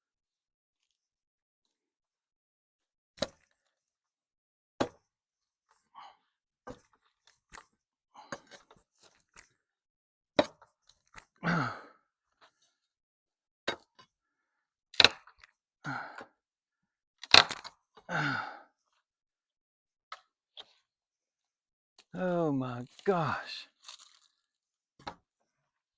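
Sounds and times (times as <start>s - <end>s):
man grunting: 11.4s - 11.9s.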